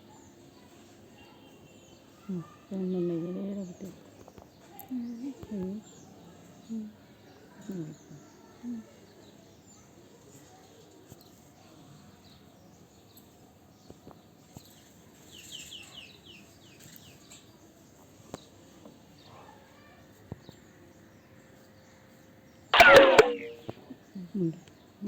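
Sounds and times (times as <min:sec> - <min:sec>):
faint bird chirps: 0:22.8 - 0:23.7
sharp clicks: 0:22.8 - 0:23.7.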